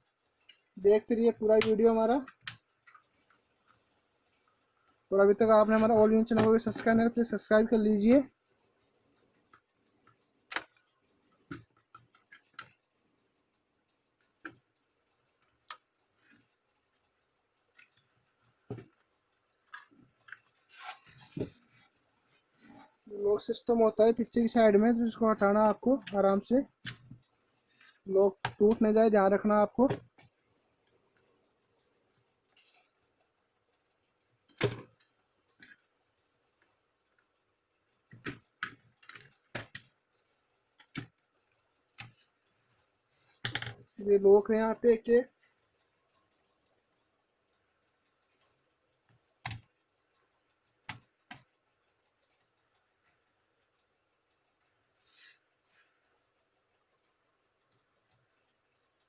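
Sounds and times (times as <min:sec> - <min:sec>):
small plastic clicks and taps: 0:09.4 - 0:12.9, 0:14.2 - 0:20.6, 0:38.0 - 0:40.0, 0:40.7 - 0:42.4, 0:48.3 - 0:51.6.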